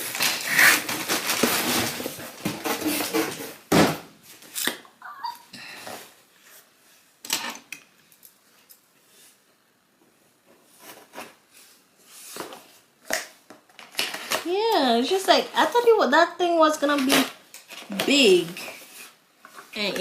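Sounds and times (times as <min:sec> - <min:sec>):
packaging rustling and clattering: 0:00.0 - 0:04.6.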